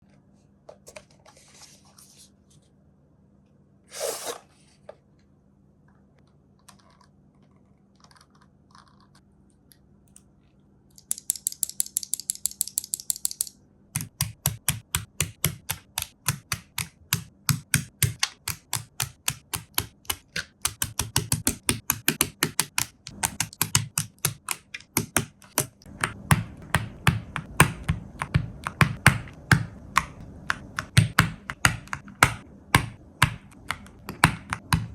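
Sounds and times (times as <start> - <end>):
typing on mechanical keyboard: 11.0 - 32.4.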